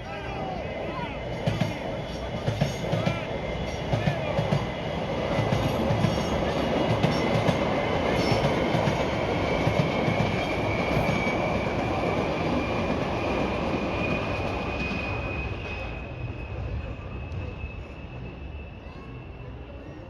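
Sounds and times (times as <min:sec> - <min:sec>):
train wheels rumbling: 0:00.0 - 0:20.0
high wheel squeal: 0:08.0 - 0:20.0.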